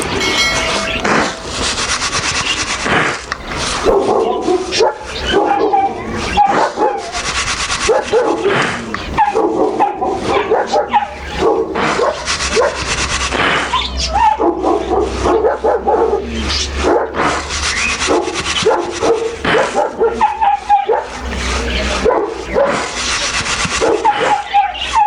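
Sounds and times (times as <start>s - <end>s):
dogs whining: 0.0s - 2.0s
dogs barking and yipping: 0.0s - 2.6s, 3.2s - 25.0s.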